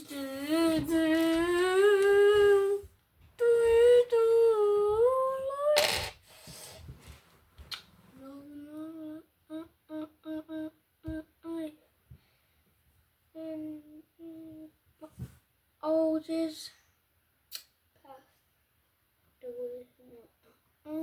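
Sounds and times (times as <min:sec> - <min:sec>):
person humming: 0:00.0 - 0:06.1, 0:08.2 - 0:11.7.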